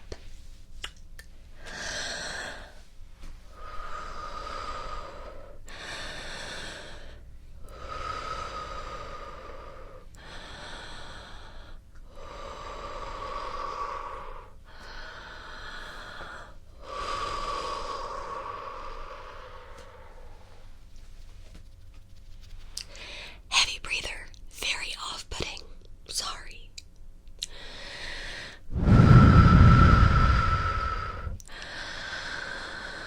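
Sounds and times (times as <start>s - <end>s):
deep breathing: 3.5s - 20.8s, 22.9s - 23.4s, 27.5s - 33.0s.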